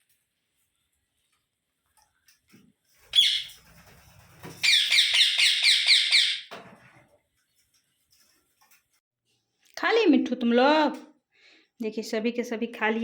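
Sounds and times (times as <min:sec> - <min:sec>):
parakeet calling: 0:03.1 - 0:03.6, 0:04.6 - 0:06.5.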